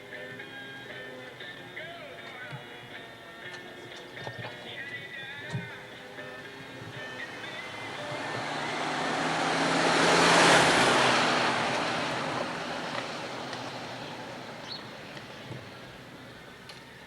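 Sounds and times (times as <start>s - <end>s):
vehicle driving past: 6.2s - 16.4s.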